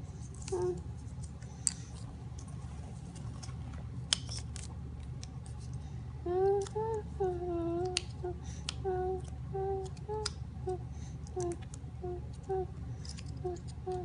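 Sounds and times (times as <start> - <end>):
person humming: 0.4 - 0.9, 6.2 - 14.0.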